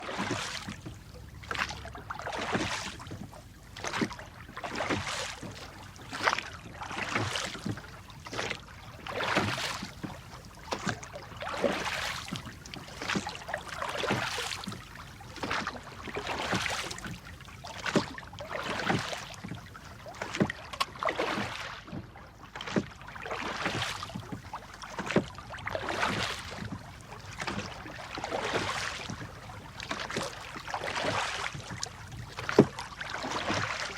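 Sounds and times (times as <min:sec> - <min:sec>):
oars splashing through water: 0:00.0 - 0:33.9.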